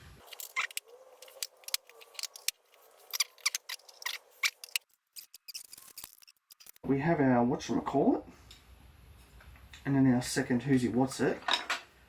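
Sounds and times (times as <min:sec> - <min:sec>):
plastic and metal parts clattering: 0:00.2 - 0:06.8.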